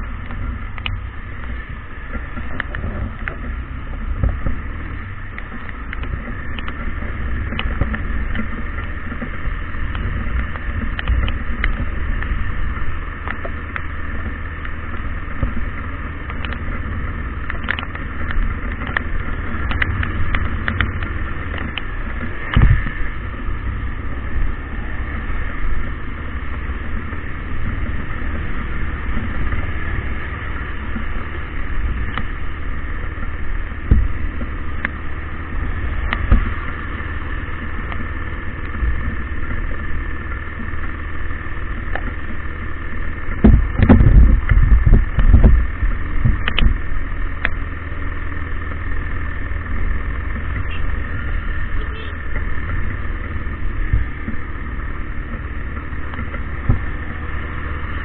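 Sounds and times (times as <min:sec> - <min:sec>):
engine rumbling: 0:00.0 - 0:58.0
low buffeting: 0:00.0 - 0:58.0.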